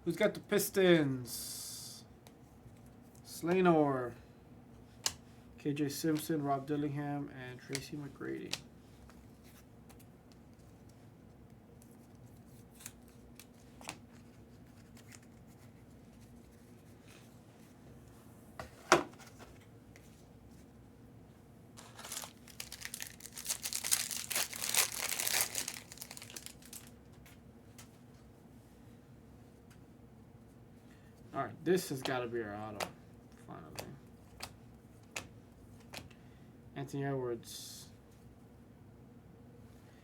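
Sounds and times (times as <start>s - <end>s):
foil wrapper tearing and crinkling: 21.8s - 26.9s.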